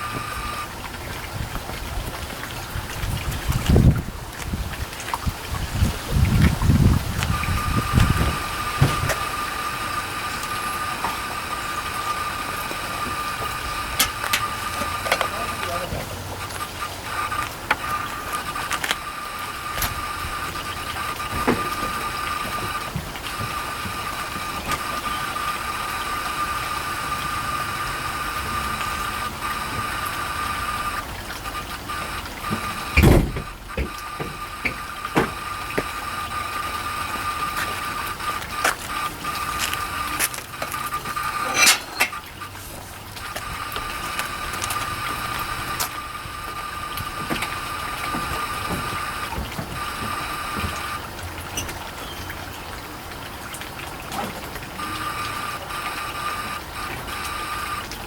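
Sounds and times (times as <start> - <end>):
hard drive high whine: 0.0 - 58.0
hard drive clicks: 6.2 - 51.8.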